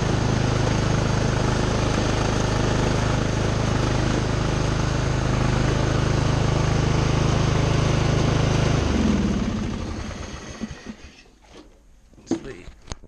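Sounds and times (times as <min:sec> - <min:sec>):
engine winding down: 0:00.0 - 0:11.3
lawn tractor engine running: 0:00.0 - 0:11.6.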